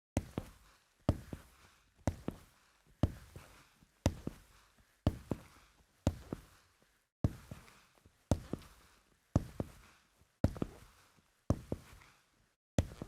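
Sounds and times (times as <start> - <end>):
boots walking on hardwood floor: 0.2 - 1.5, 2.1 - 3.5, 4.1 - 4.4, 5.1 - 5.5, 6.1 - 6.5, 7.3 - 7.7, 8.3 - 8.7, 9.4 - 9.8, 10.4 - 10.9, 12.8 - 13.0.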